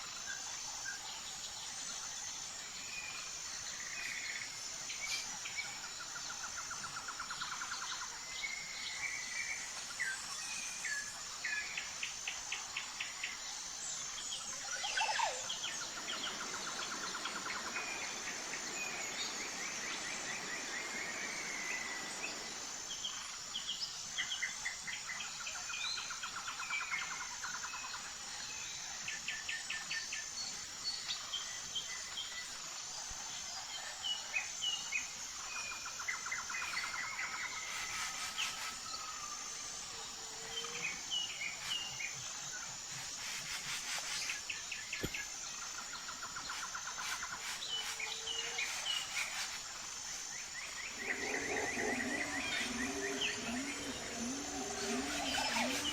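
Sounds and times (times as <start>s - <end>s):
high-pitched insect drone: 2.7s - 24.6s, 35.0s - 55.9s
birds chirping and trilling: 14.0s - 23.2s, 46.5s - 55.9s.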